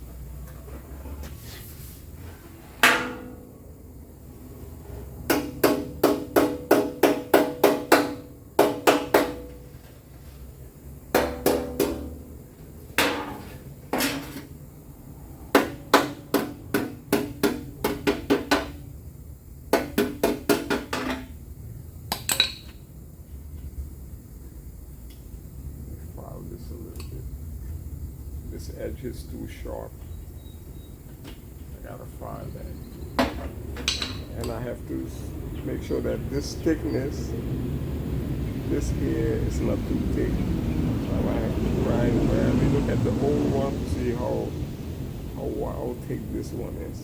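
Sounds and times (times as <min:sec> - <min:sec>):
hammer striking metal: 0:02.8 - 0:03.5, 0:05.3 - 0:09.6, 0:11.1 - 0:12.3, 0:13.0 - 0:14.3, 0:15.5 - 0:18.8.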